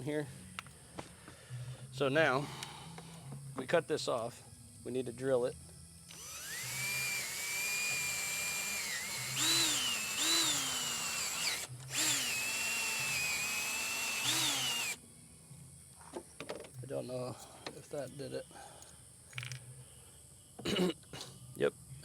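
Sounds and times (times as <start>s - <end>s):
electric drill whining: 6.1s - 15.0s.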